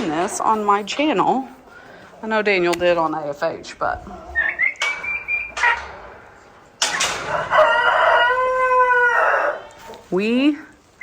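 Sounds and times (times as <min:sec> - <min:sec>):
rooster crowing: 0:07.3 - 0:09.7.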